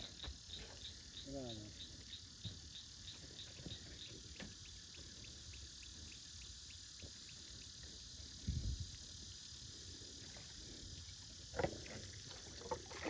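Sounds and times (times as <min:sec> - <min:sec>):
cricket chirping: 0:00.0 - 0:13.0
high hiss of insects: 0:00.0 - 0:13.0.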